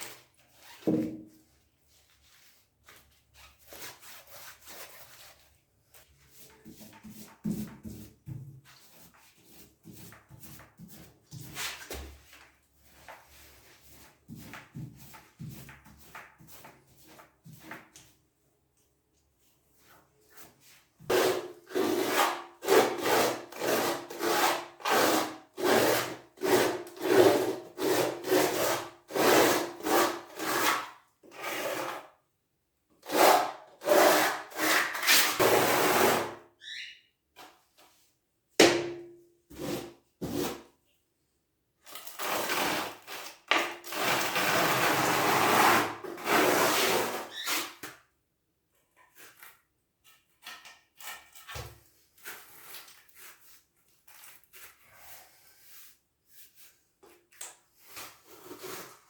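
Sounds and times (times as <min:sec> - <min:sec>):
hand tool scraping hard surface: 0:21.1 - 0:32.0.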